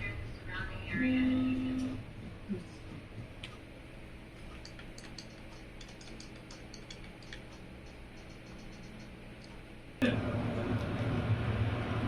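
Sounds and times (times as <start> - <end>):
low steady hum: 0.0 - 12.0
light clicks and ticks: 4.4 - 9.6.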